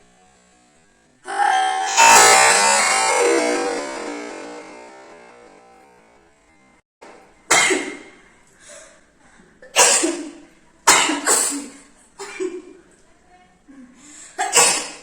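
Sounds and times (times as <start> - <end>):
person sneezing: 9.8 - 10.3, 10.9 - 11.8, 14.4 - 15.0.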